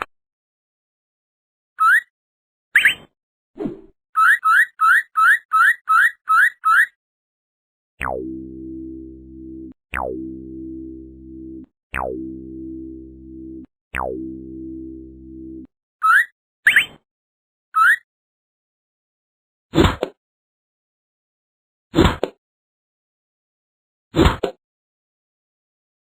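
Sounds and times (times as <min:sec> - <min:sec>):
long low synth tones: 0:08.0 - 0:15.7.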